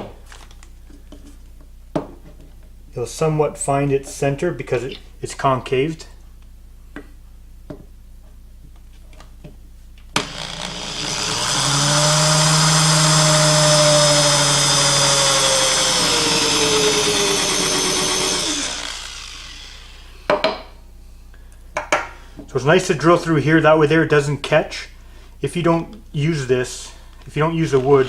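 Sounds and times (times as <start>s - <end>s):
power drill boring through plastic: 10.2s - 20.1s.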